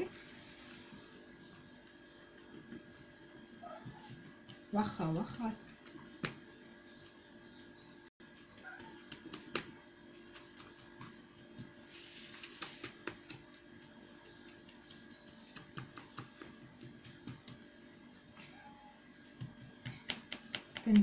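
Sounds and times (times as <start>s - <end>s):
faint steady hum: 0.0s - 7.9s.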